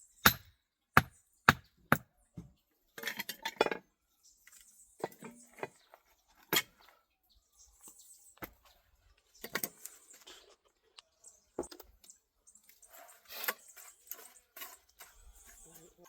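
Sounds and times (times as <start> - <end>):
hand tool striking stone: 0.2 - 2.1.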